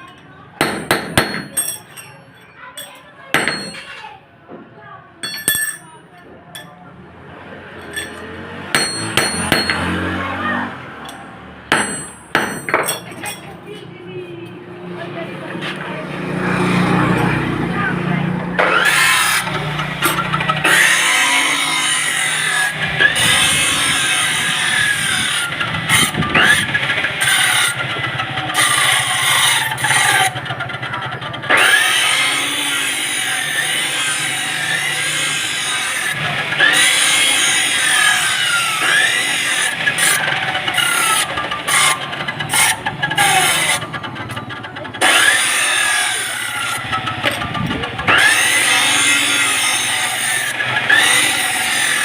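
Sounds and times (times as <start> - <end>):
power tool whining: 18.5 - 52.0.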